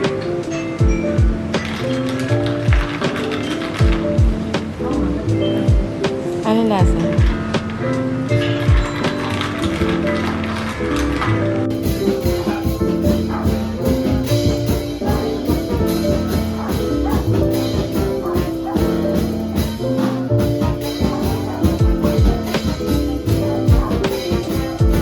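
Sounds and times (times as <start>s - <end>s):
instrumental music with drum beat: 0.0s - 10.8s, 11.6s - 25.0s.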